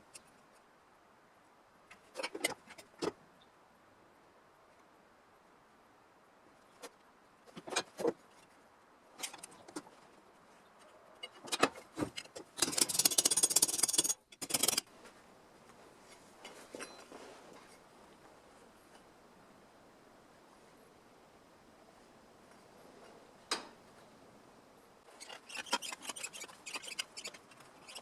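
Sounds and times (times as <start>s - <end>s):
fast scraping rattle: 12.0s - 14.9s, 25.1s - 28.0s.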